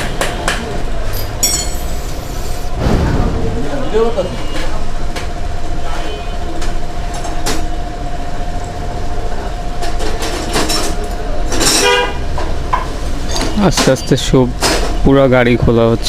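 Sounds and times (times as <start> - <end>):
tools and parts clinking: 1.2 - 2.1
steady hum: 1.4 - 9.9
low rumble: 2.7 - 5.6.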